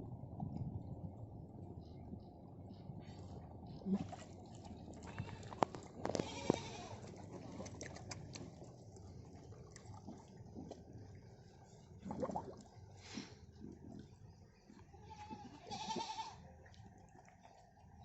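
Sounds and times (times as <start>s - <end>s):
goats bleating: 5.1s - 7.0s, 14.9s - 16.4s.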